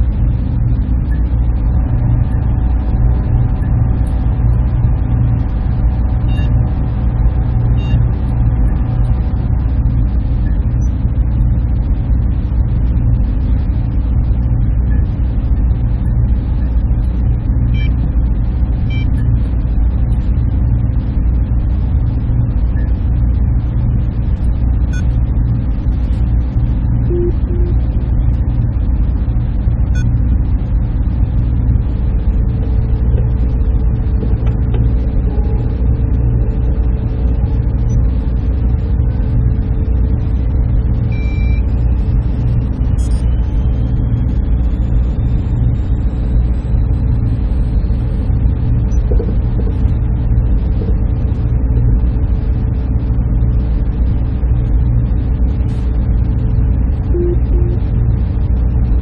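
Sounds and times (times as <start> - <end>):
cooling fans droning: 0.0 - 59.0
faint steady hum: 0.0 - 59.0
faint brief tones: 57.2 - 57.8.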